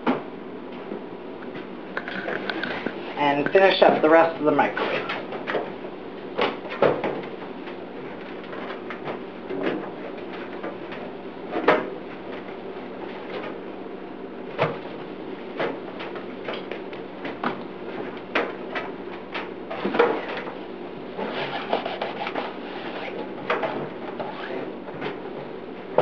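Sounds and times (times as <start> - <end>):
rag wiping microwave interior: 21.2 - 24.6.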